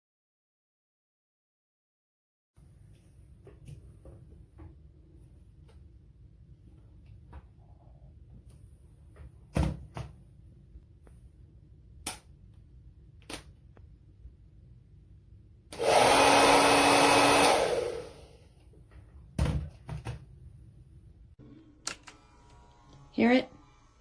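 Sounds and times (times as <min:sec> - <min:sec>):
hair dryer blowing: 0:15.7 - 0:18.5.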